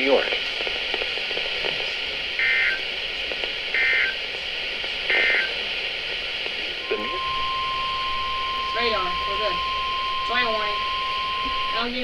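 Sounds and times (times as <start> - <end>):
radio hiss: 0.0 - 12.0
buzzy two-tone data bursts: 2.4 - 2.8, 3.7 - 4.2, 5.1 - 5.6, 6.8 - 12.0
steady warning alarm tone: 2.4 - 2.8, 3.8 - 4.2, 5.1 - 5.6, 6.8 - 12.0.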